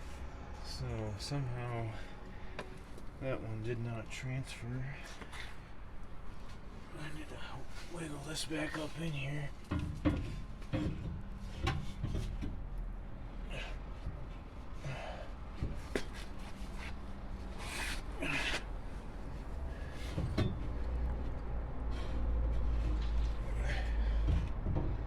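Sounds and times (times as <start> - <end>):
metal clunks and scrapes: 9.6 - 12.7, 19.9 - 21.0.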